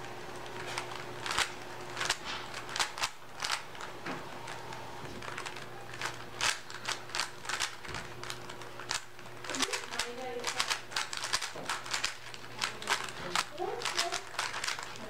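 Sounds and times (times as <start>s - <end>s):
puzzle cube plastic clicks: 0.4s - 4.6s, 5.2s - 15.0s.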